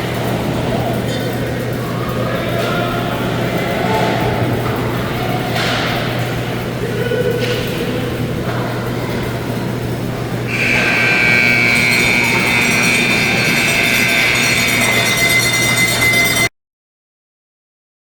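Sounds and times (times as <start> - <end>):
rink background noise: 0.0 - 16.5
arena horn blast: 10.5 - 16.1.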